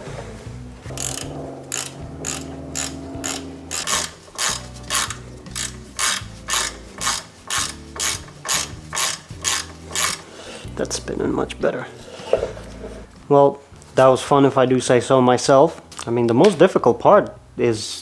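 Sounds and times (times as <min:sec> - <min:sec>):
wheel hub spinning: 0:00.0 - 0:10.3
rhythmic scraping swish: 0:00.0 - 0:10.5.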